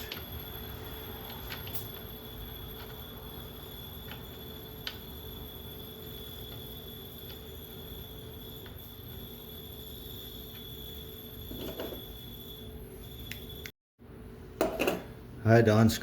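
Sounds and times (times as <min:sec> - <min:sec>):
steady background hum: 0:00.0 - 0:16.0.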